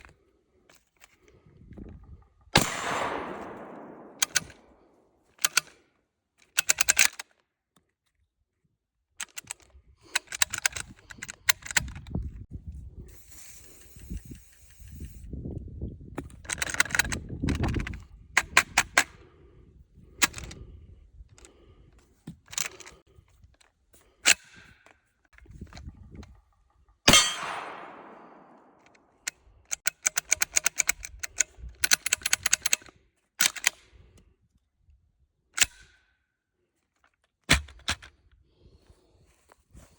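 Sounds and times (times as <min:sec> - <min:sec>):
shotgun action clicking: 0:02.6 - 0:04.8, 0:05.4 - 0:05.7, 0:06.6 - 0:07.2, 0:27.1 - 0:29.0.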